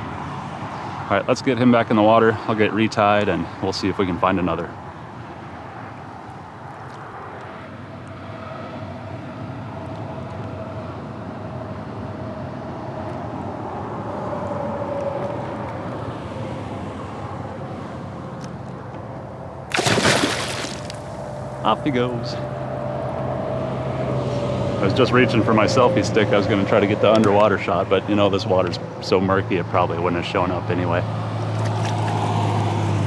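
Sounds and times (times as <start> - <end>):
highway traffic hum: 0.0 - 33.0
passing vehicle tyre noise: 4.9 - 29.1, 30.8 - 33.0
fish splashing into water: 19.7 - 21.4.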